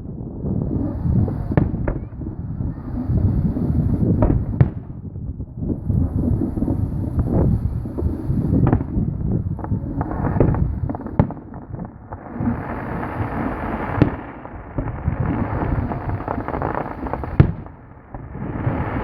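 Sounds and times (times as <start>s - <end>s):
low rumble of fireworks booms: 0.0s - 19.0s
sharp fireworks bangs: 0.4s - 5.1s, 5.9s - 19.0s
fireworks crackling pops: 0.4s - 19.0s.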